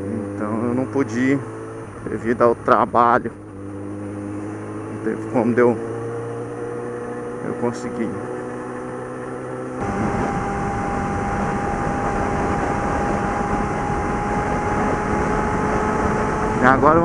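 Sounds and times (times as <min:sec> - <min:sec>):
motorcycle engine cruising: 0:00.0 - 0:17.0.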